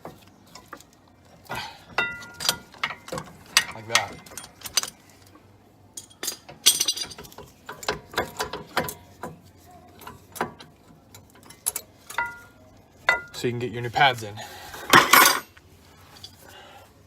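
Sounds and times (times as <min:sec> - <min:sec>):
metal clicks and clinks: 0:02.0 - 0:05.4, 0:06.0 - 0:09.0.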